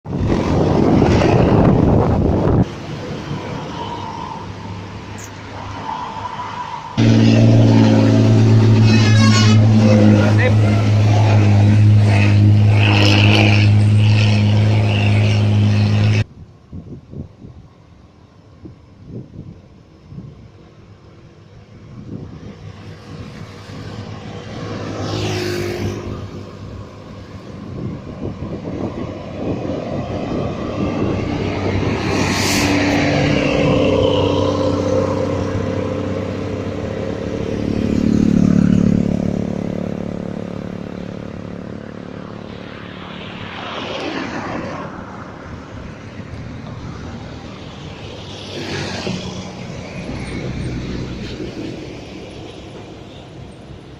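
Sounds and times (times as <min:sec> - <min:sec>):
road traffic passing: 0:00.0 - 0:53.9
heavy engine low drone: 0:07.0 - 0:16.4.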